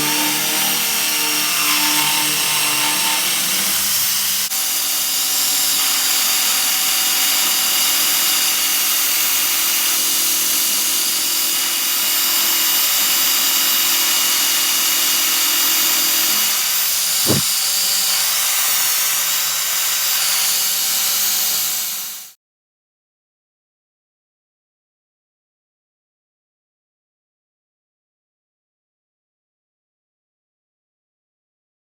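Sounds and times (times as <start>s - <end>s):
power tool whirring: 17.2s - 17.5s.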